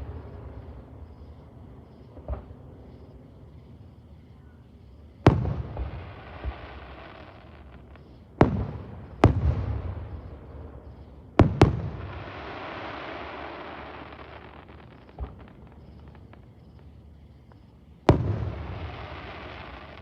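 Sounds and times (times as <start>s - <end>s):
fireworks bangs: 5.3s - 16.4s, 17.5s - 20.0s
fireworks hiss: 5.3s - 20.0s.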